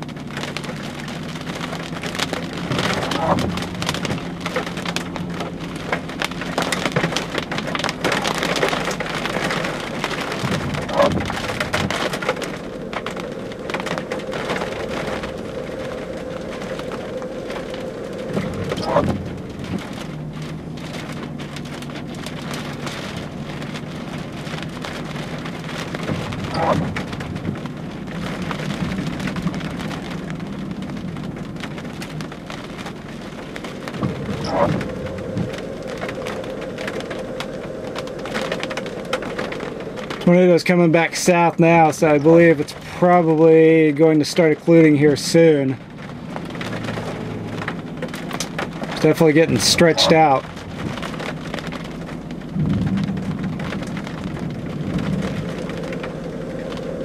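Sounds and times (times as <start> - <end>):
rain pattering: 0.0 - 57.0.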